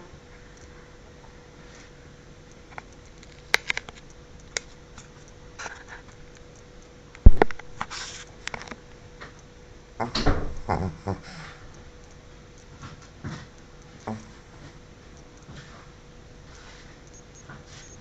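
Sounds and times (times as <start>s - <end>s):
small clicks and scratches: 1.6s - 9.5s, 16.5s - 18.0s.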